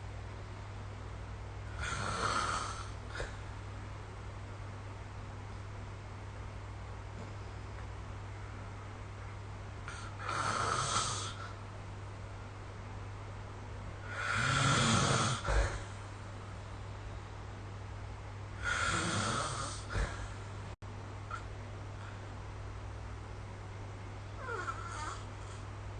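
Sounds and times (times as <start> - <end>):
steady low hum: 0.0 - 25.9
person snoring: 1.7 - 3.4, 9.9 - 11.6, 14.0 - 16.0, 18.6 - 20.4, 24.4 - 25.6.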